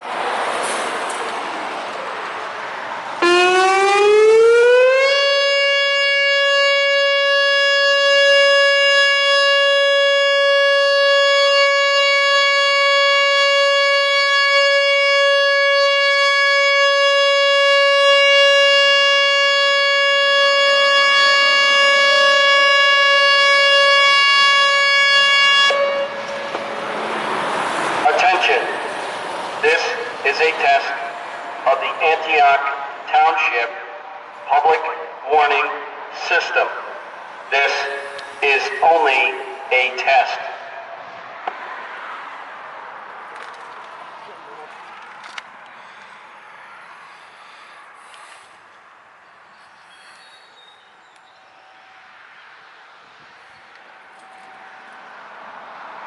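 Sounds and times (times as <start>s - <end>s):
warning siren: 3.1s - 41.6s, 50.5s - 56.0s.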